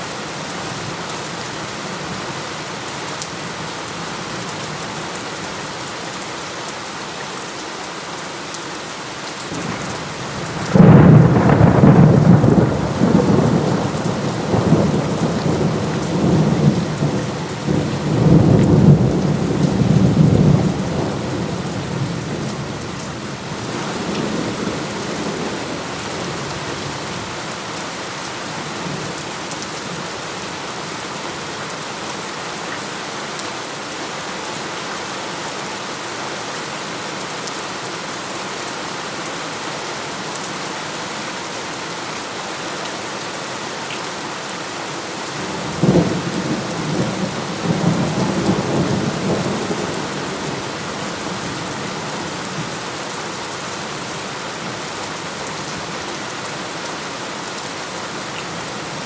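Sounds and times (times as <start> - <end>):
heavy rain: 0.0 - 59.0
thunder crack and rumble: 10.4 - 21.8.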